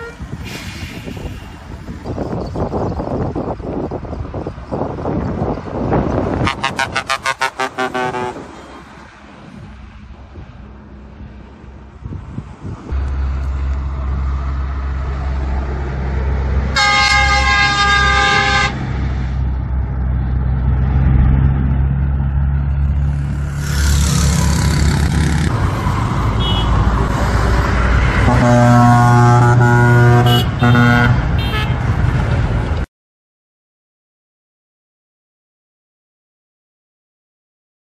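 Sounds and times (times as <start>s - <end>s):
bus horn blasts: 0.0s - 0.4s, 6.4s - 8.6s, 16.7s - 18.9s, 26.4s - 26.8s, 28.2s - 31.8s.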